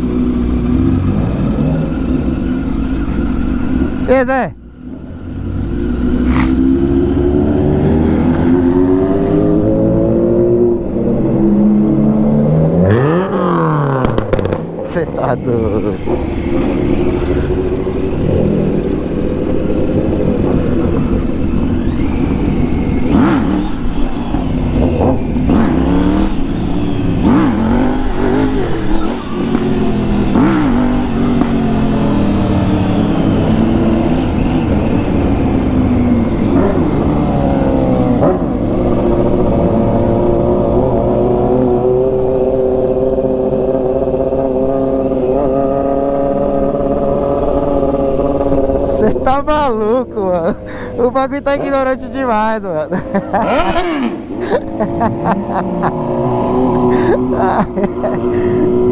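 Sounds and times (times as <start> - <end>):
motorcycle and car engines revving: 0.0 - 58.9
exhaust cracks: 12.9 - 33.0.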